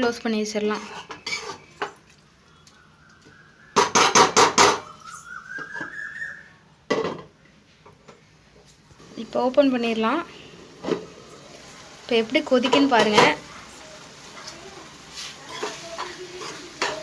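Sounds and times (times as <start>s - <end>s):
pan lid clinking: 15.5s - 17.0s.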